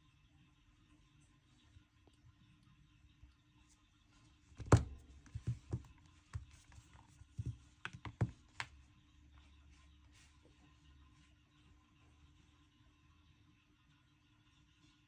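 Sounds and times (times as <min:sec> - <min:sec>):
handling taps and knocks: 0:04.6 - 0:08.8.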